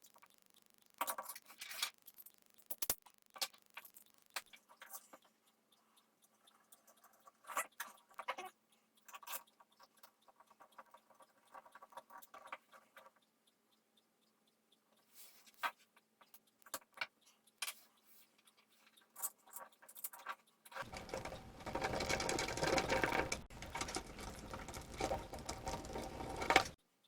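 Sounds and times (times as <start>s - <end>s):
plastic parts clicking and clattering: 19.6s - 26.8s.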